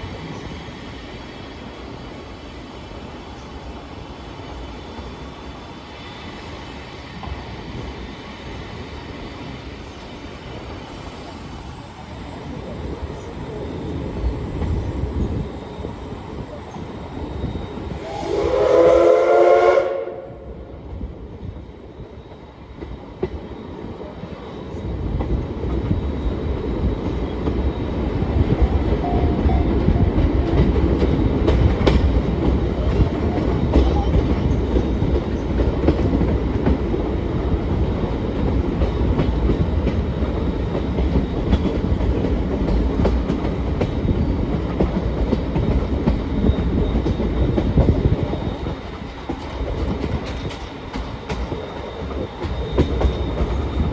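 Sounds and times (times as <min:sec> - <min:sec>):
moving train rumble: 0:00.0 - 0:53.9
train whistle: 0:17.8 - 0:20.6, 0:28.9 - 0:30.1
rail clicks: 0:20.8 - 0:53.9.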